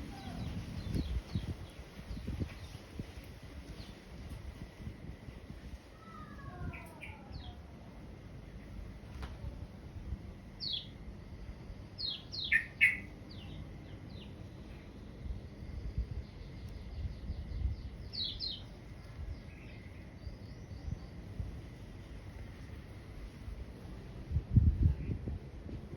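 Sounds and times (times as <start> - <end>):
small birds chirping: 0.0 - 4.3, 6.0 - 7.7, 10.5 - 11.1, 11.9 - 22.8.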